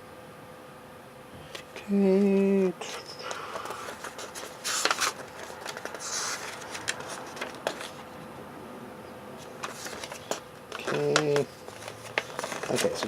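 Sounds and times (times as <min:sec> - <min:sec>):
paper pages rustling: 0:02.3 - 0:08.2, 0:09.4 - 0:13.0
page turning swishes: 0:03.5 - 0:08.0, 0:09.4 - 0:13.0.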